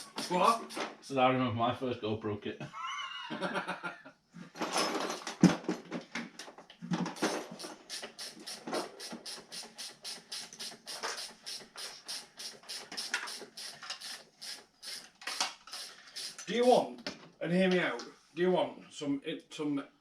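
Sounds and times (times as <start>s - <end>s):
rapid scraping strokes: 0.0s - 1.0s, 7.1s - 16.9s.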